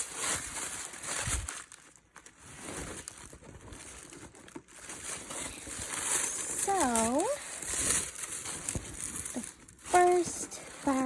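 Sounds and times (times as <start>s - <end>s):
packaging crinkling: 0.0s - 11.0s.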